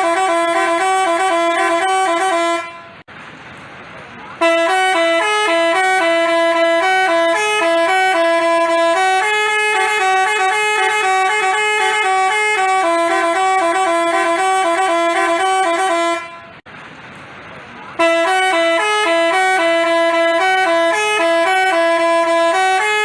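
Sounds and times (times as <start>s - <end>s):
musical air horn tune: 0.0s - 3.0s, 4.4s - 16.6s, 18.0s - 23.0s.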